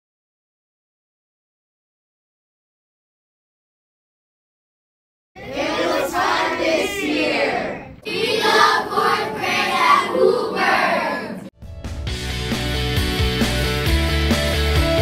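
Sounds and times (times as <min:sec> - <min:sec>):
children singing together: 0:05.4 - 0:11.5.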